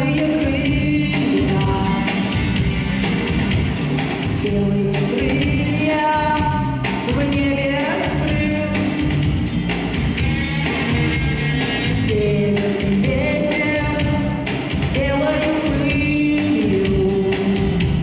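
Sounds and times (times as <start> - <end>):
woman singing: 0.0 - 2.4, 4.4 - 9.2, 11.8 - 18.0
full band playing folk-rock: 2.1 - 4.5, 8.7 - 12.9.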